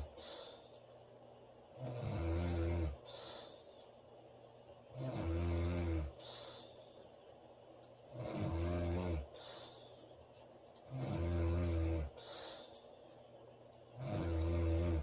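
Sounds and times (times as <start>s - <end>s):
woman snoring: 1.8s - 3.4s, 4.9s - 6.5s, 8.1s - 9.5s, 10.9s - 12.4s, 14.0s - 15.0s.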